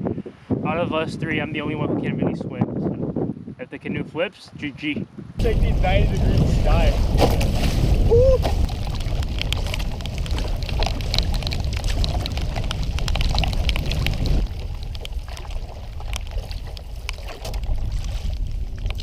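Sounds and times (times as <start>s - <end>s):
wind buffeting microphone: 0.0s - 19.0s
water splashing and dripping: 5.4s - 19.0s.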